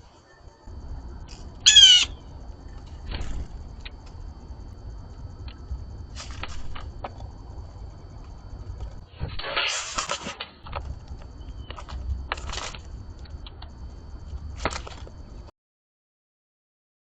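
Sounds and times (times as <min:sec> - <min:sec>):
blue jay call: 0:01.6 - 0:02.3.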